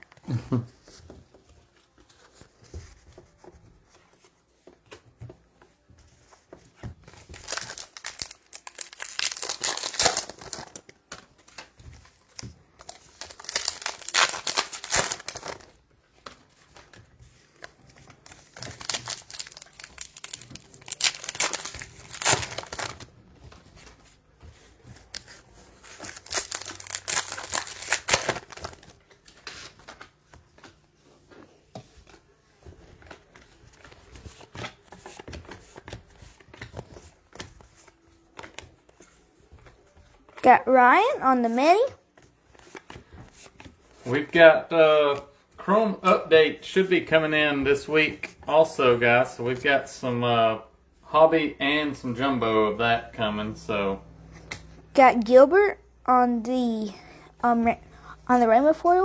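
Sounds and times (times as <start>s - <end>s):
foil wrappers tearing and crinkling: 7.0s - 15.8s, 16.8s - 23.6s, 24.8s - 30.1s.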